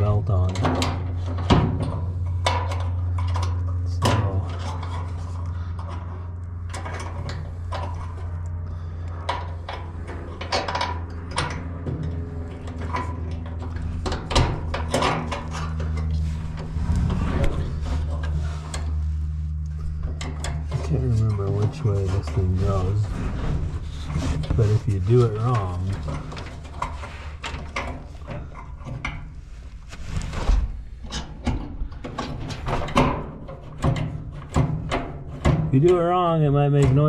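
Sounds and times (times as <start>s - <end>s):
clicks and knocks of parts: 0.0s - 16.7s, 19.6s - 22.4s, 25.4s - 29.3s, 30.3s - 36.0s
steady low hum: 0.0s - 37.0s
metal rubbing on metal: 12.5s - 28.3s.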